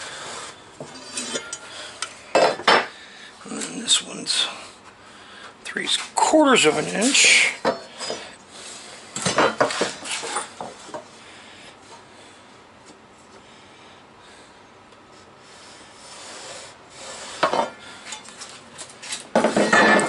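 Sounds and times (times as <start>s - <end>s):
scraping on wooden workbench: 19.2s - 20.0s.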